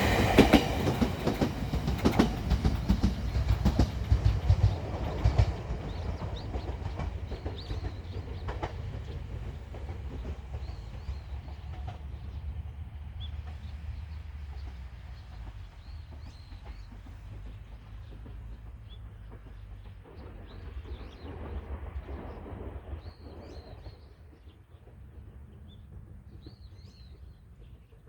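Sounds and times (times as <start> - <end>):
electric train rumbling: 0.0 - 28.0
small birds chirping: 0.5 - 21.4.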